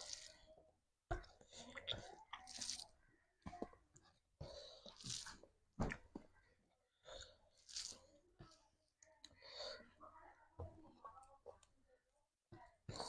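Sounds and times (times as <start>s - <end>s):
person chewing food: 0.0s - 6.3s, 7.1s - 8.1s.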